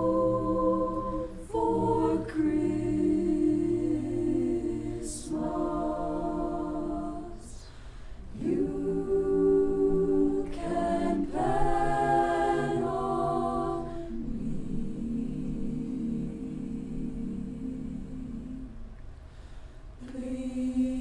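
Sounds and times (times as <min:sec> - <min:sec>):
choir singing held chords: 0:00.0 - 0:21.0
singers breathing: 0:07.6 - 0:08.4, 0:19.1 - 0:20.0.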